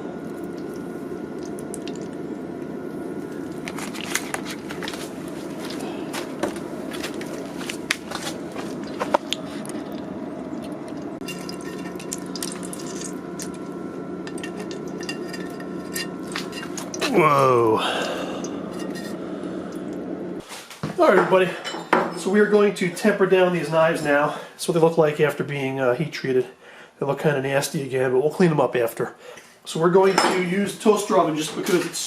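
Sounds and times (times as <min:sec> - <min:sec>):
hot steel sizzling in oil: 0:11.2 - 0:17.1.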